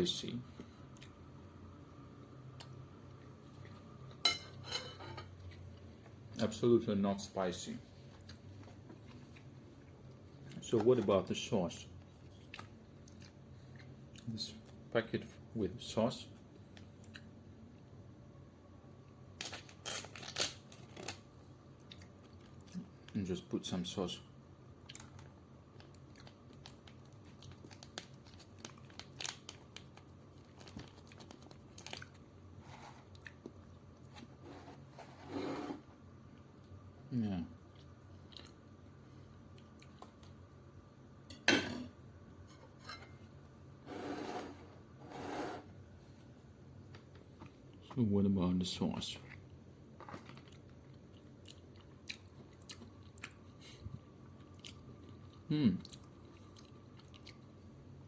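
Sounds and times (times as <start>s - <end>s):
chewing food: 12.2s - 14.8s, 21.8s - 23.0s, 37.7s - 38.6s, 49.2s - 53.5s, 54.4s - 57.8s.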